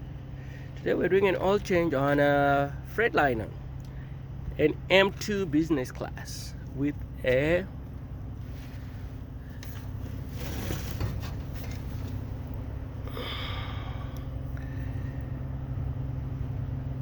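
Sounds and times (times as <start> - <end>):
low machine hum: 0.0 - 17.0
breaths or rustles near microphone: 8.4 - 12.4.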